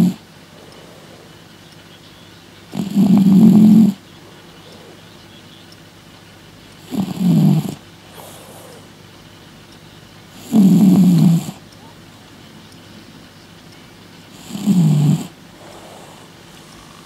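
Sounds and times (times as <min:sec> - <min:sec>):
cat snoring: 0:00.0 - 0:01.4, 0:02.7 - 0:05.0, 0:06.8 - 0:08.9, 0:10.4 - 0:11.6, 0:14.3 - 0:17.0.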